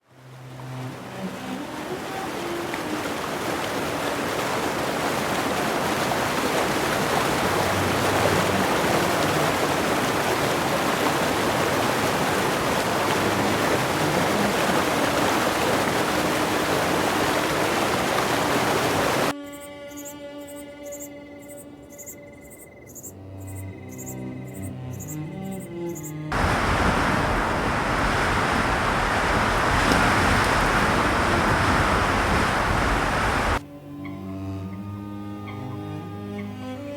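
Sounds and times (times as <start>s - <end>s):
water rushing over rocks: 0.3s - 19.3s, 26.3s - 33.6s.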